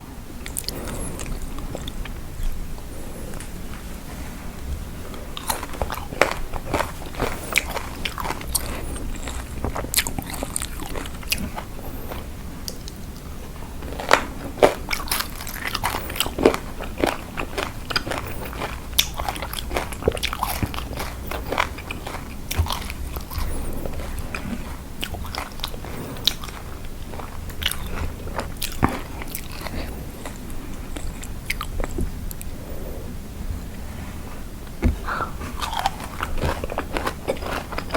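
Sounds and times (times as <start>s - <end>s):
wet mouth sounds: 5.0s - 33.8s
crisp crunching and chewing: 5.1s - 33.0s, 35.0s - 37.9s.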